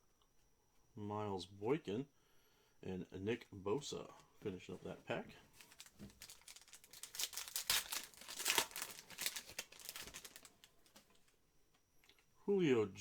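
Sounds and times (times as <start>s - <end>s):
foil wrapper tearing and crinkling: 5.6s - 11.2s.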